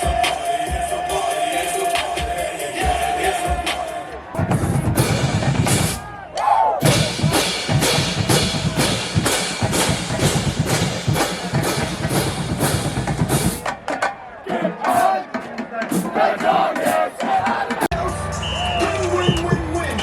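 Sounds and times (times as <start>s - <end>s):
drumline playing cadence: 0.0s - 20.0s
bass drums: 2.0s - 13.8s, 17.7s - 20.0s.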